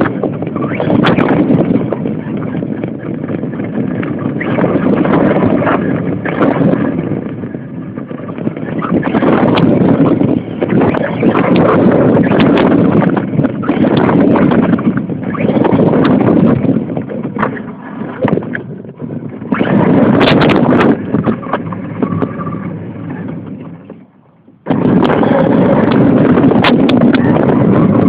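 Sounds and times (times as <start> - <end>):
toy car rumbling and rattling: 0.0 - 24.1, 24.7 - 28.0.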